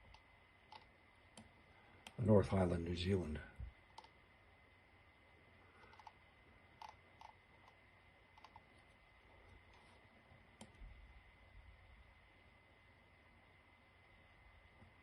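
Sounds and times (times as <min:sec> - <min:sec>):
faint computer clicks: 0:00.0 - 0:02.2, 0:03.9 - 0:04.2, 0:05.8 - 0:06.2, 0:06.8 - 0:10.0, 0:10.6 - 0:10.8.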